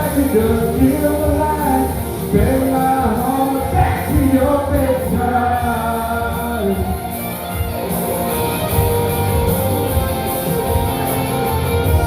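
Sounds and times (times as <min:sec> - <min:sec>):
person singing: 0:00.0 - 0:08.3
country-rock backing track: 0:00.0 - 0:12.0.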